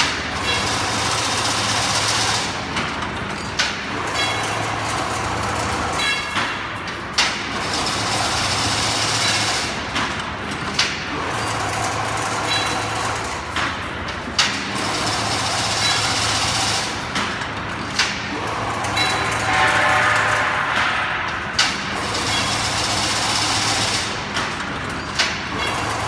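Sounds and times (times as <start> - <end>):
sharp machine clank: 18.3 - 25.9.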